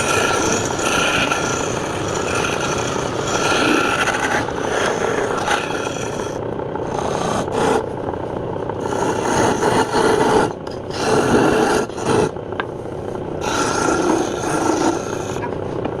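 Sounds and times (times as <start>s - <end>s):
tool scraping spinning wood: 0.0s - 16.0s
wood lathe humming: 0.0s - 16.0s.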